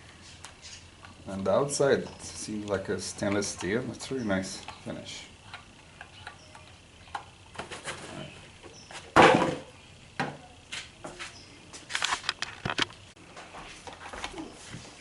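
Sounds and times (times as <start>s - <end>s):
loud clunk: 9.1s - 9.7s.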